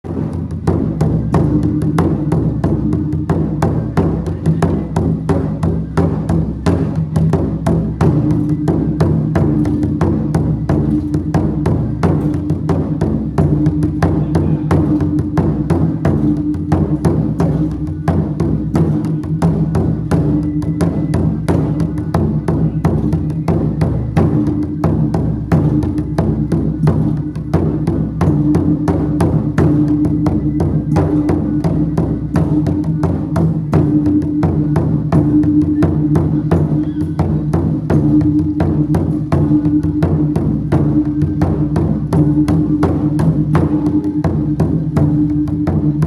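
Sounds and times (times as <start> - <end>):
gong and drum percussion: 0.0 - 46.0.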